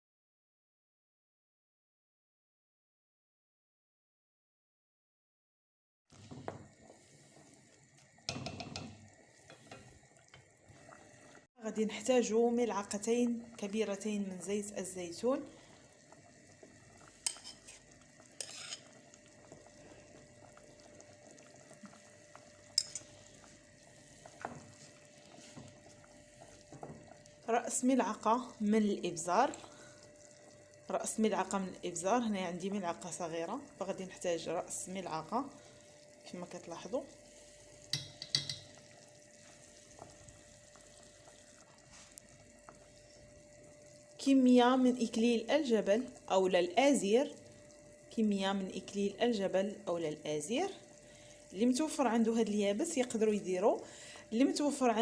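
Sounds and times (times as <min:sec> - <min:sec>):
faint kitchen background: 0:06.1 - 0:55.0
soup simmering hiss: 0:06.1 - 0:55.0
spoon knocking on pot: 0:08.3 - 0:09.0, 0:37.9 - 0:38.8
spoon clinking on cooking pot: 0:17.3 - 0:17.7, 0:22.8 - 0:23.1, 0:37.9 - 0:38.8.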